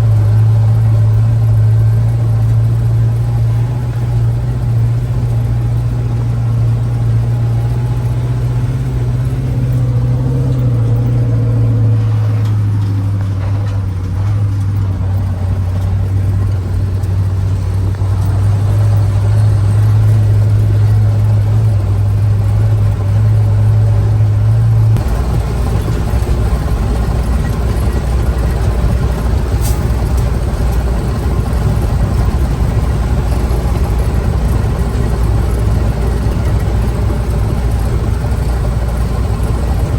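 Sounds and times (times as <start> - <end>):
truck engine running: 0.0 - 39.9.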